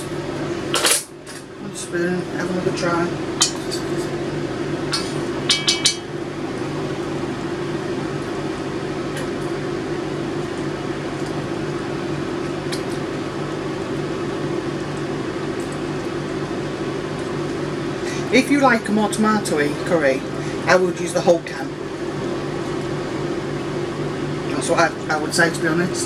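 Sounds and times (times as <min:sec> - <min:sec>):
kitchen fan humming: 0:00.0 - 0:26.0
microwave running: 0:00.0 - 0:26.0
spoon clinking against metal pot: 0:05.0 - 0:06.1.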